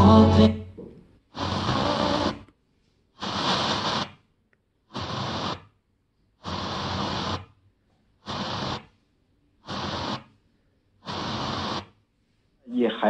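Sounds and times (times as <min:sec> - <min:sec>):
radio static bursts: 0:01.4 - 0:02.5, 0:03.2 - 0:04.2, 0:04.9 - 0:05.7, 0:06.4 - 0:07.5, 0:08.2 - 0:08.9, 0:09.6 - 0:10.3, 0:11.0 - 0:12.0.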